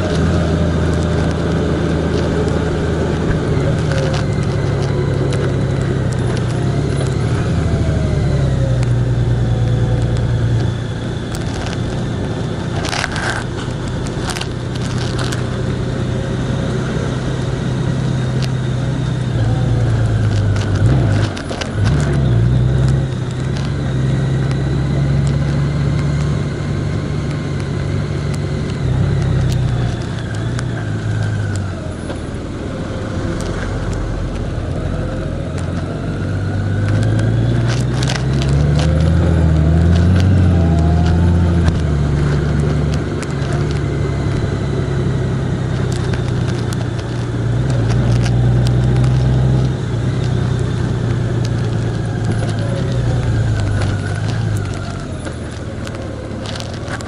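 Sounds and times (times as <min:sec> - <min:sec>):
tyre and road noise: 0:00.0 - 0:57.0
vehicle engine running: 0:00.0 - 0:57.0.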